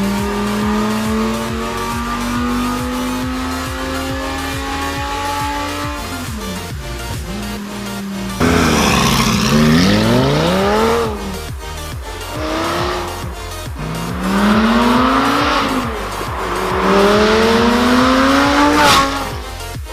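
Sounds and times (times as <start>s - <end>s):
background music with beat: 0.0s - 19.9s
car engine accelerating hard: 0.0s - 19.9s.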